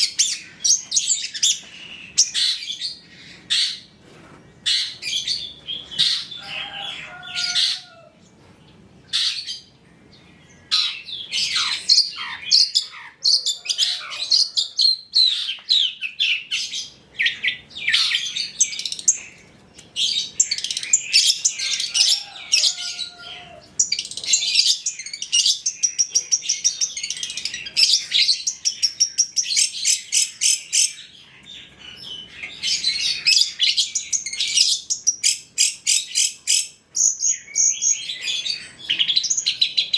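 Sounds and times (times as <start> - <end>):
bird singing chirps and trills: 8.7 - 39.9.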